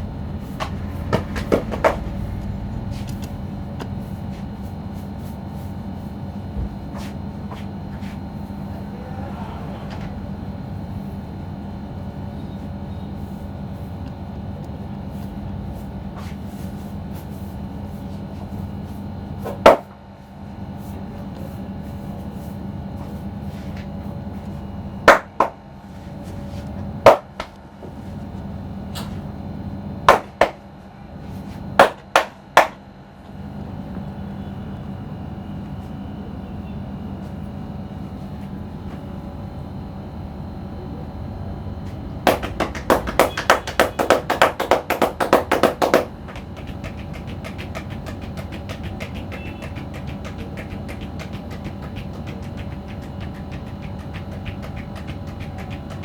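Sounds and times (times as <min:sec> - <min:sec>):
steady background hum: 0:00.0 - 0:56.0
sharp cracks of neck massage: 0:42.3 - 0:56.0.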